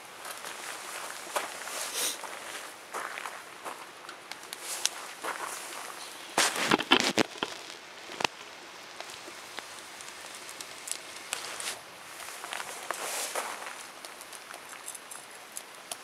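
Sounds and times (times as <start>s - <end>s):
wood fire crackling: 0.0s - 16.0s
fire popping and snapping: 3.3s - 16.0s.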